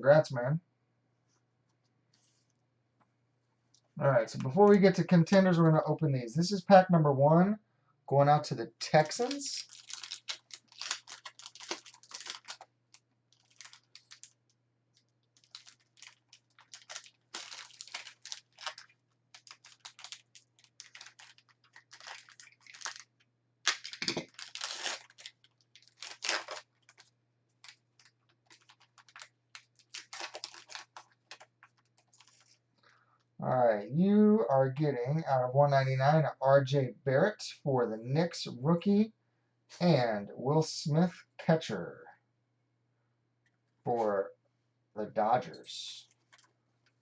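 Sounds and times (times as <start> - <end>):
card pack wrapper crinkling: 8.9 - 32.6, 46.1 - 46.5.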